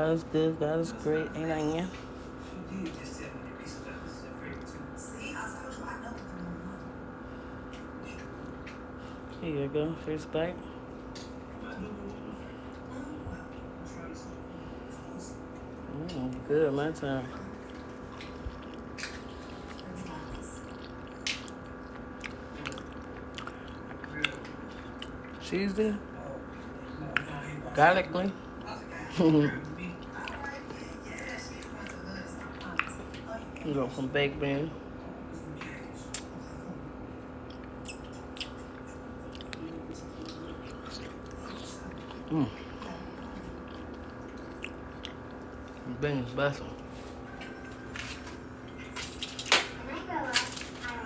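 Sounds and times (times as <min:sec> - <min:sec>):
steady low hum: 0:00.0 - 0:51.0
person chewing food: 0:17.2 - 0:25.5, 0:28.4 - 0:33.7, 0:37.3 - 0:45.9
wet mouth clicks: 0:37.5 - 0:39.6.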